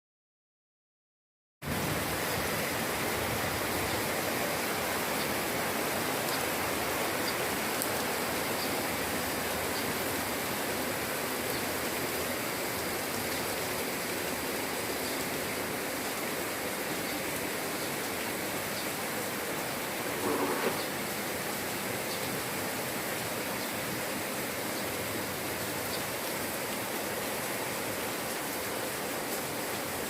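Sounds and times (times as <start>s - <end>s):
light rain falling: 1.6s - 30.0s.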